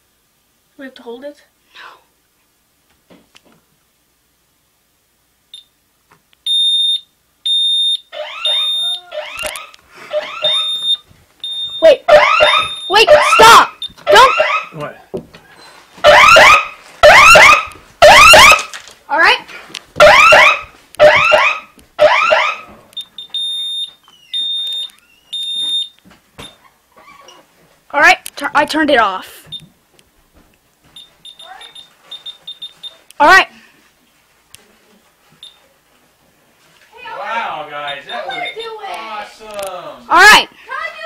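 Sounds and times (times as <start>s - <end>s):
alarm high beeps: 6.5s - 14.8s, 20.0s - 26.6s, 31.0s - 33.0s, 37.8s - 39.0s
alarm siren yelp: 8.1s - 11.0s, 11.8s - 14.9s, 16.0s - 18.7s, 20.0s - 22.8s.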